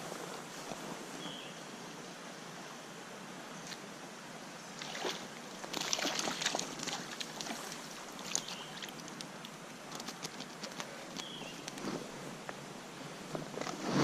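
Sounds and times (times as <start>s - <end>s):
rushing stream: 0.0s - 14.0s
fish splashing and sloshing: 4.8s - 11.8s.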